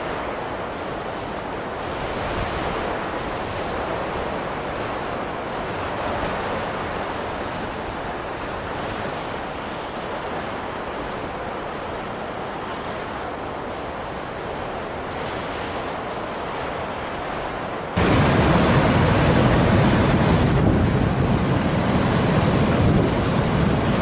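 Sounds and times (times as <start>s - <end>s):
wind blowing steadily: 18.0s - 24.0s.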